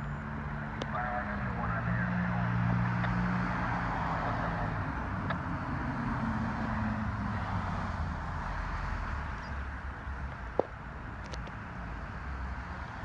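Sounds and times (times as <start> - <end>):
heavy vehicle engine hum: 0.0 - 13.0
street traffic noise: 0.0 - 13.0.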